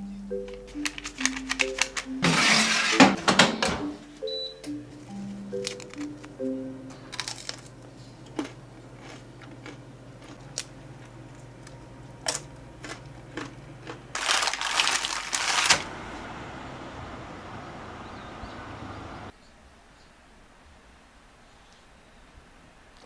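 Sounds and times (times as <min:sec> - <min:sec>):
loud crinkling and crushing: 0:00.5 - 0:03.9, 0:07.0 - 0:16.2.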